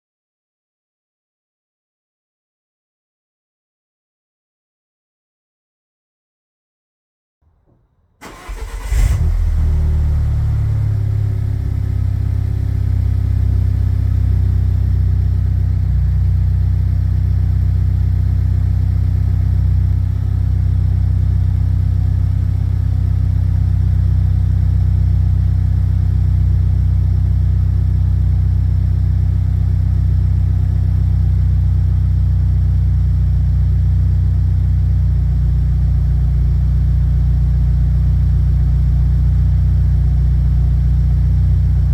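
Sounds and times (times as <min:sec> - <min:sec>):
car engine cranking and starting: 0:08.2 - 0:15.8
car engine idling: 0:08.2 - 0:41.9.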